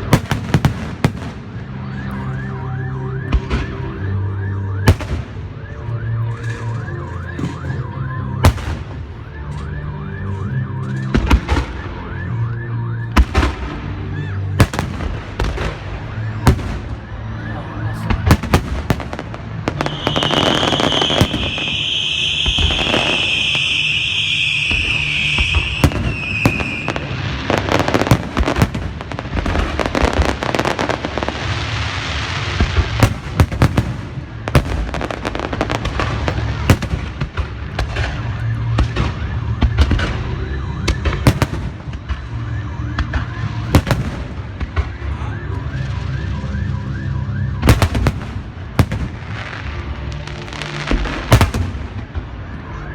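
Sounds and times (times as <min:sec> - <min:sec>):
fireworks cracking and banging: 0:00.0 - 0:02.5, 0:04.8 - 0:52.9
high whistling whine: 0:19.7 - 0:28.0.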